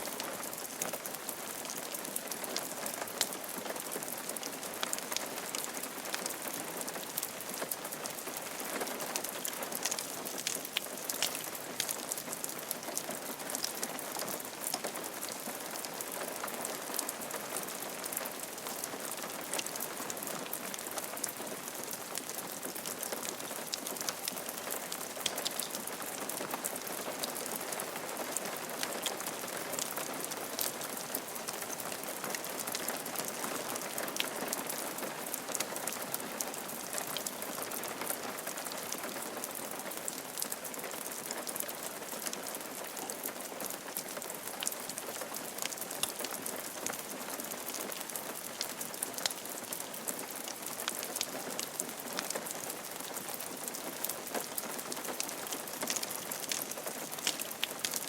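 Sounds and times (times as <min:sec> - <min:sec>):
rain falling on a roof: 0:00.0 - 0:58.0.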